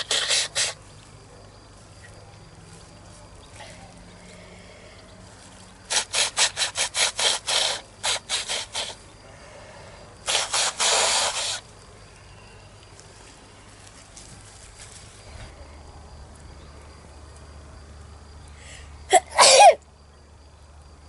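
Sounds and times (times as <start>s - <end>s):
girl blowing her nose: 0.0s - 0.8s, 5.9s - 9.0s, 10.2s - 11.6s.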